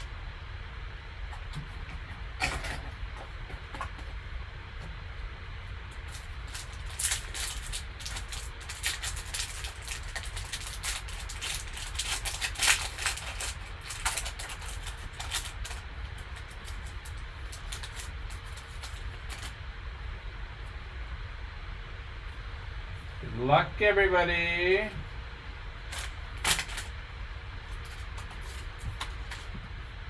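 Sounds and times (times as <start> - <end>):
plastic wrap and cardboard tearing: 6.0 - 19.6, 25.9 - 27.0, 27.7 - 29.6.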